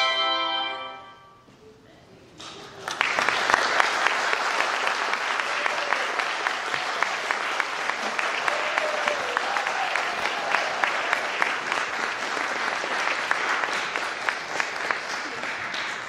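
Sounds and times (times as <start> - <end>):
crowd applauding: 2.7 - 16.0.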